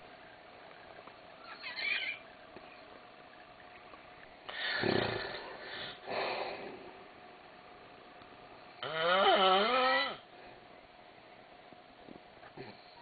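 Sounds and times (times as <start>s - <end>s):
man snoring: 4.5s - 5.6s, 8.8s - 10.2s.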